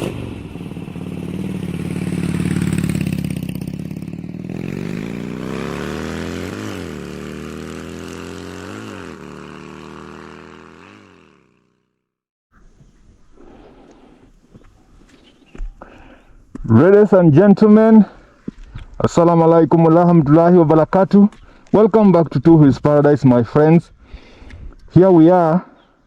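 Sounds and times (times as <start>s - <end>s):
motorcycle engine accelerating: 0.0s - 12.1s.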